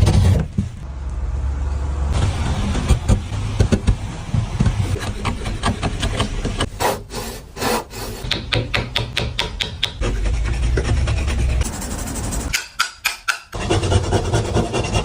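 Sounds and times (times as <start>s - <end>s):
hand tool rasping wood: 4.8s - 11.7s, 12.4s - 15.0s.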